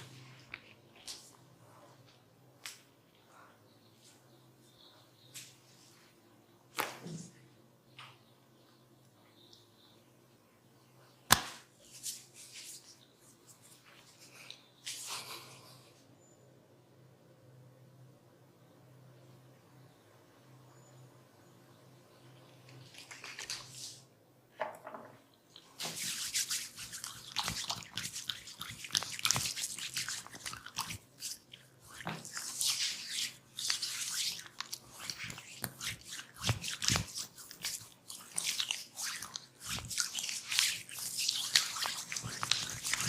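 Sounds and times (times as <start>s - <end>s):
hands rubbing skin: 25.6s - 43.0s.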